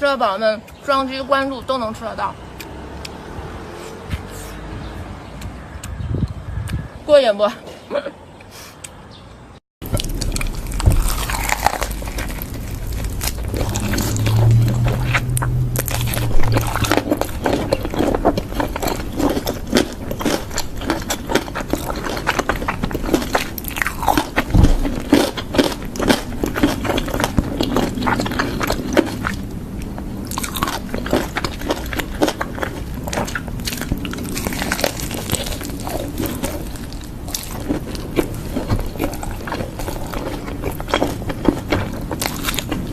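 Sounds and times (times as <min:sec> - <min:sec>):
crunchy bites and wet chewing: 0:09.8 - 0:42.9.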